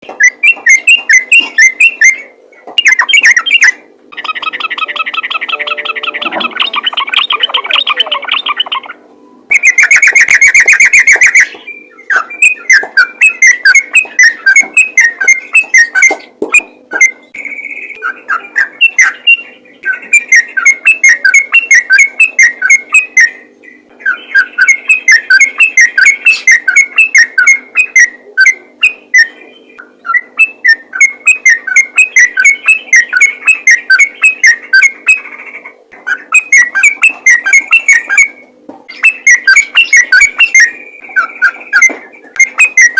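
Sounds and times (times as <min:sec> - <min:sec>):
faint steady hum: 0:00.0 - 0:42.9
bird singing bubbly chirps: 0:00.1 - 0:42.9
loud held tone: 0:04.7 - 0:08.2.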